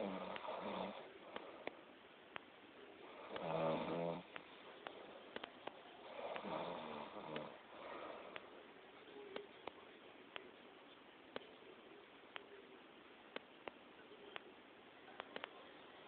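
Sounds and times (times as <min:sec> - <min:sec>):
person snoring: 0:00.0 - 0:01.1, 0:03.1 - 0:04.3, 0:06.0 - 0:08.1
faint sharp clicks: 0:01.3 - 0:02.5, 0:04.3 - 0:06.5, 0:13.3 - 0:14.5, 0:15.2 - 0:15.6.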